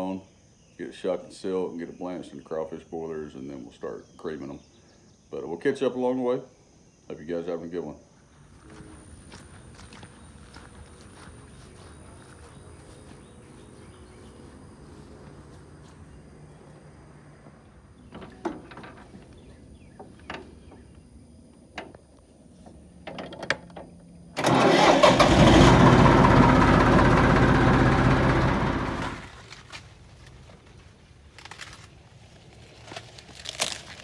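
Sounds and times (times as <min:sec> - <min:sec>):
vehicle engine running: 0:24.4 - 0:29.4.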